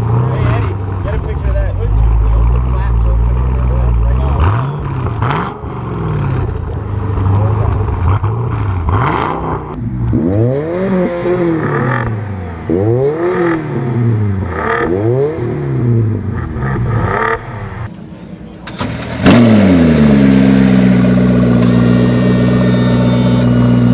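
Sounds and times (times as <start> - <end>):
engine revving: 0.0 - 17.9, 18.6 - 23.9
engine starting and idling: 17.8 - 20.1.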